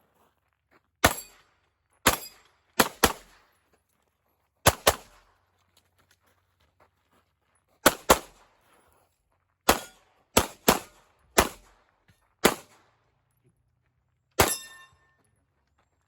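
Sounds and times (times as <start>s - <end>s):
pistol shots: 1.0s - 1.4s, 2.0s - 3.4s, 4.7s - 5.2s, 7.8s - 8.4s, 9.7s - 11.8s, 12.4s - 12.8s, 14.4s - 14.8s.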